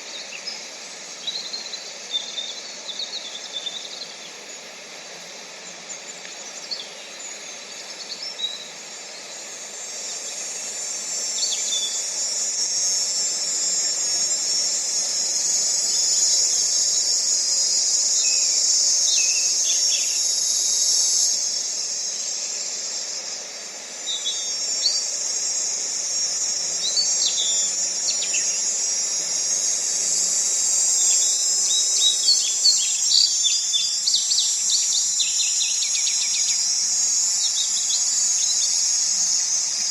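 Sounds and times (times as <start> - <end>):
high-pitched insect chorus: 0.0 - 39.9.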